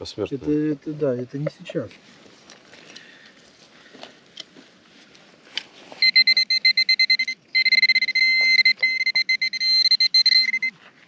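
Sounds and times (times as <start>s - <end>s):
metal detector beeping: 6.0s - 10.8s.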